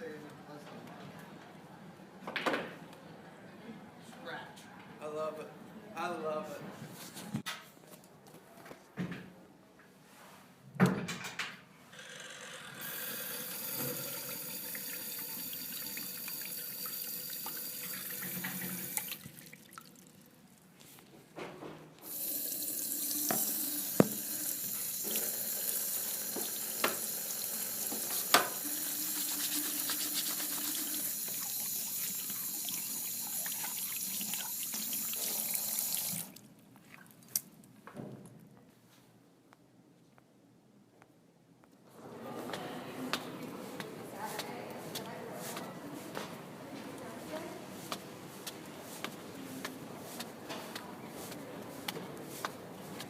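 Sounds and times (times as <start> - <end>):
water running from a tap: 12.8 - 20.2, 22.0 - 36.3.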